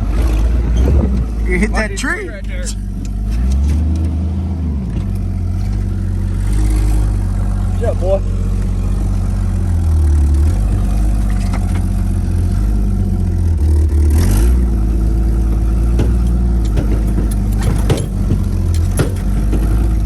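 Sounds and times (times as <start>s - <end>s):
car engine droning: 0.0s - 20.0s
short clicks and rattles: 16.0s - 20.0s.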